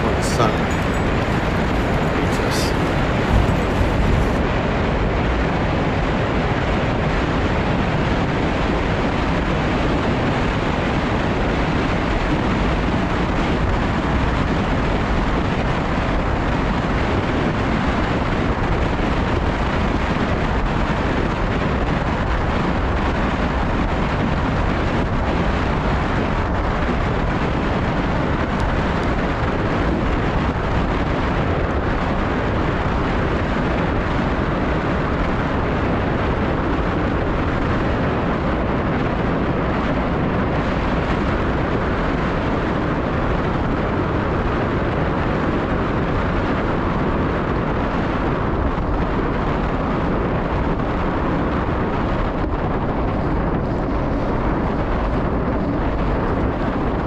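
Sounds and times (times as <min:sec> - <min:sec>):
wind rushing over microphone: 0:00.0 - 0:57.0.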